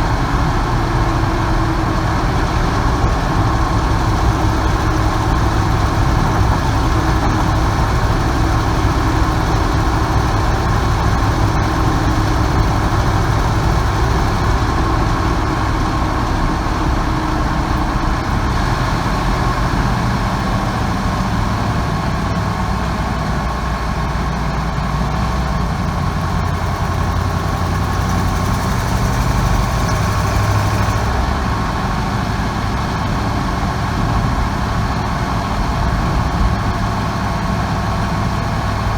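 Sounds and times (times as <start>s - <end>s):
van engine running: 0.0s - 38.9s.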